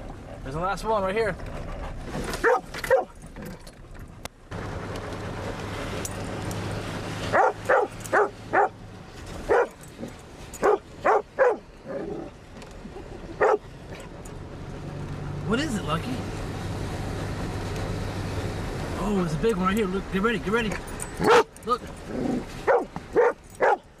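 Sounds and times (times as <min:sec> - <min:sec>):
engine humming: 0:00.0 - 0:24.0
dog barking: 0:02.4 - 0:03.2, 0:07.3 - 0:08.8, 0:09.5 - 0:09.8, 0:10.6 - 0:11.6, 0:13.4 - 0:13.6, 0:21.2 - 0:21.5, 0:22.6 - 0:23.9
tyres splashing through water: 0:04.6 - 0:23.9.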